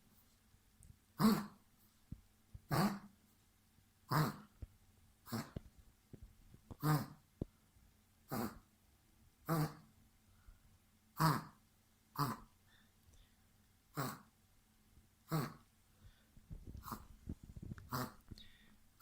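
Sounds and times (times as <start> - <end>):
dog coughing: 1.2 - 1.6, 2.7 - 3.1, 4.1 - 4.5, 13.9 - 14.3, 15.3 - 15.6, 17.9 - 18.2.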